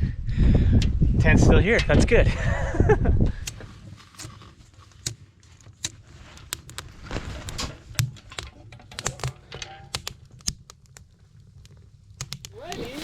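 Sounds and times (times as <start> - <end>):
wind rumbling on microphone: 0.0 - 4.0
sharp clicks and knocks: 5.0 - 13.0.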